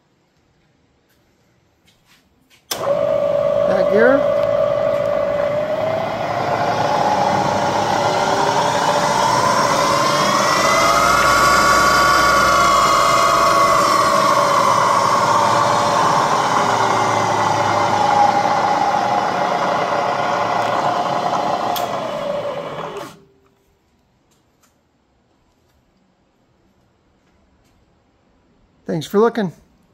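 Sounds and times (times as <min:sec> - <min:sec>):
milling machine whine: 0:02.7 - 0:23.3.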